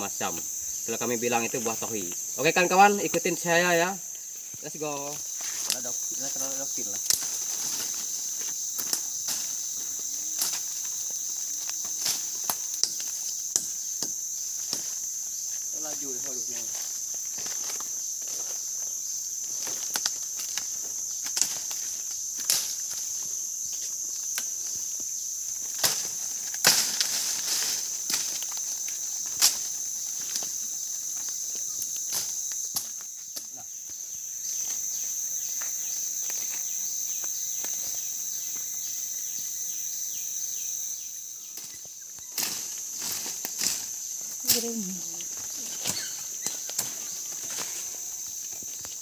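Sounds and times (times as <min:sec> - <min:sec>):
insects chirring: 0:00.0 - 0:49.0
footsteps through undergrowth: 0:01.5 - 0:39.7, 0:41.4 - 0:49.0.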